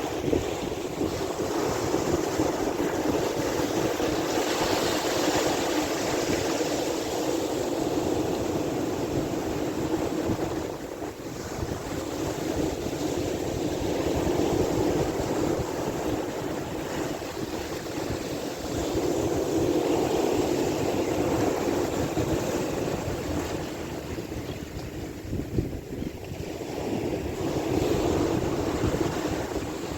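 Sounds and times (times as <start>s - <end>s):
wind buffeting microphone: 0.0s - 29.9s
sea waves washing: 27.0s - 29.9s.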